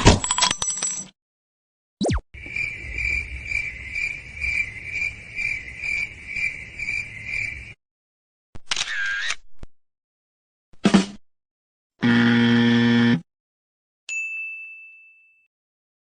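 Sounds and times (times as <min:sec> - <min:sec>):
crickets chirping: 0:02.4 - 0:07.8.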